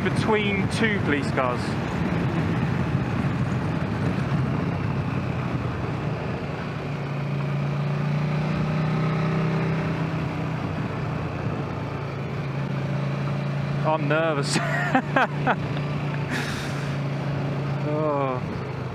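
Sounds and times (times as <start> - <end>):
wind rush across microphone: 0.0 - 6.2
motorcycle engine cruising: 0.0 - 18.9.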